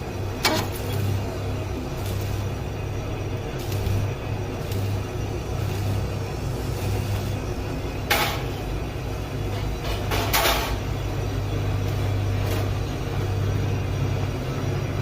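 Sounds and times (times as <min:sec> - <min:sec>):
car engine idling: 0:00.0 - 0:08.1.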